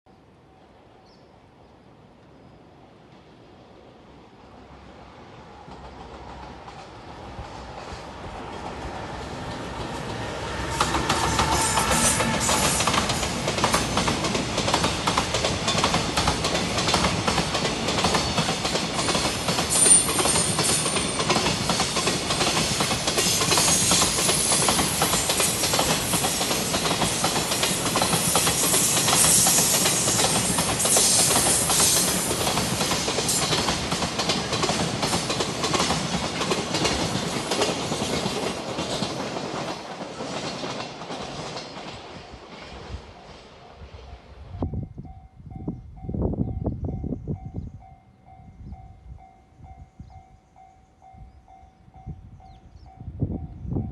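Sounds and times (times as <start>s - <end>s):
train wheels clickety-clack: 5.6s - 43.5s.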